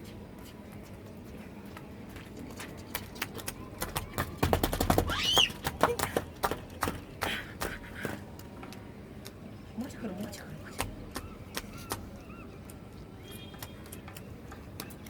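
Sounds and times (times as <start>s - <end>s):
child squealing: 5.1s - 5.6s.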